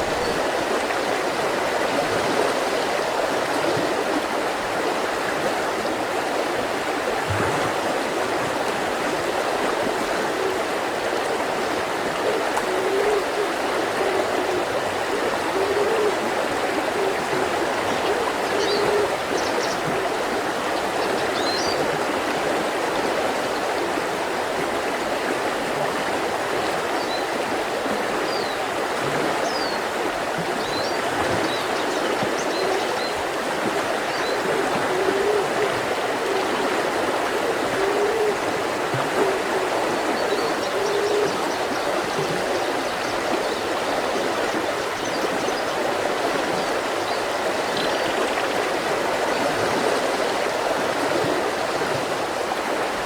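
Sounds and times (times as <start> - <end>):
river rushing over stones: 0.0 - 53.0.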